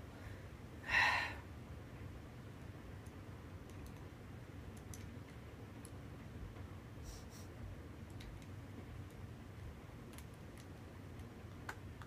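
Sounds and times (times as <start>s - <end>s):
breathy sigh: 0.8s - 1.4s.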